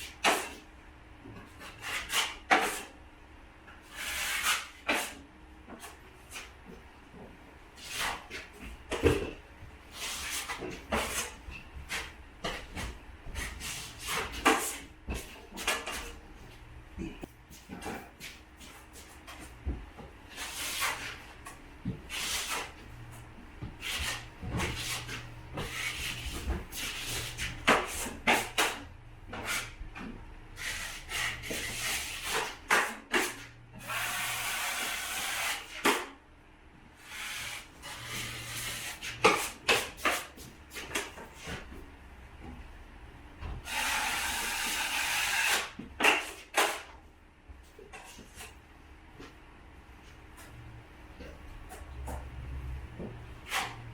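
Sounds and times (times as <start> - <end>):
taping knife scraping compound: 1.6 - 3.0, 3.8 - 6.5, 20.3 - 21.3, 22.1 - 22.8, 23.8 - 29.8, 30.6 - 33.5.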